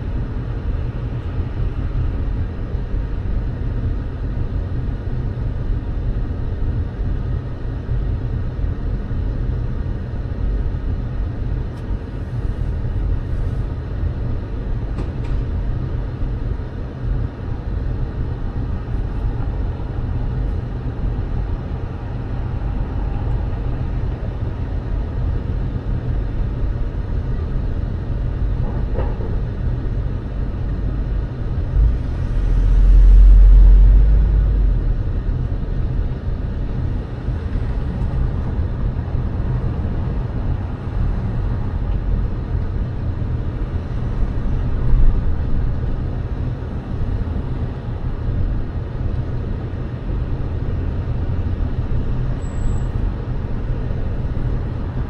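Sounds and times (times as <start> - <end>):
road traffic rumble: 0.0 - 55.0
deep low rumble: 28.5 - 40.7.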